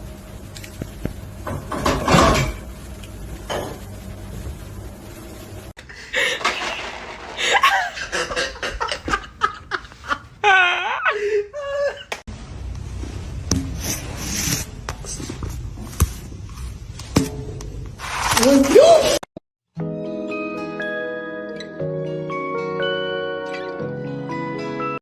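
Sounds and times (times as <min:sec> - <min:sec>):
person gasping: 0:05.9 - 0:06.5, 0:11.1 - 0:11.9
people laughing: 0:06.0 - 0:12.2.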